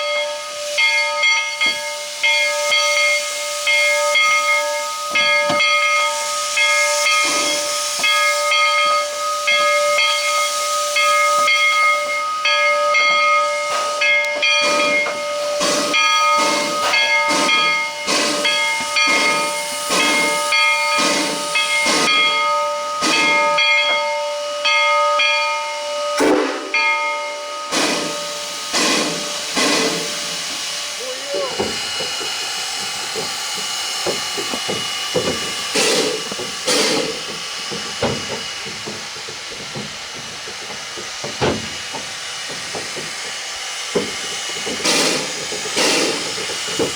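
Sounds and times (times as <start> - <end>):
steam locomotive hissing steam: 0.0 - 46.9
locomotive exhaust puffs: 0.4 - 24.0, 27.6 - 46.9.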